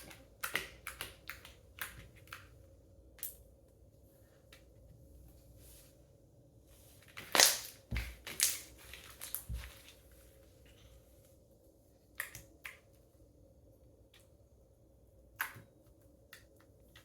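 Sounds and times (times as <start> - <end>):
slime squishing: 0.0 - 3.4.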